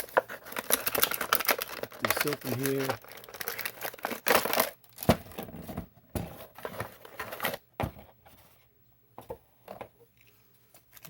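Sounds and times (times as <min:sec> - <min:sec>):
packaging crinkling and clicking: 0:00.0 - 0:05.4.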